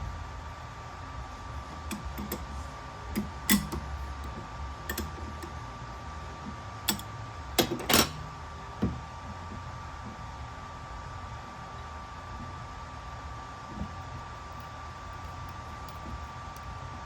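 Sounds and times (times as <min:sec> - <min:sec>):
faint steady hum: 0:00.0 - 0:17.0
metal parts and tools clicking: 0:03.2 - 0:03.9, 0:04.9 - 0:05.5, 0:06.9 - 0:08.2.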